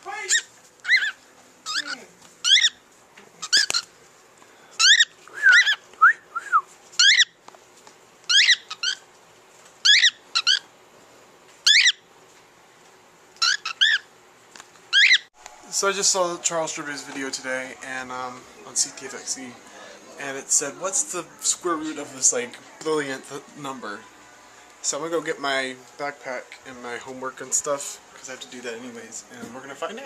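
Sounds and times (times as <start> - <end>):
bird chirping: 0.3 - 2.8, 4.8 - 5.8, 7.0 - 7.4, 8.3 - 9.0, 9.8 - 10.7, 11.6 - 12.0, 13.4 - 14.1, 14.9 - 15.3.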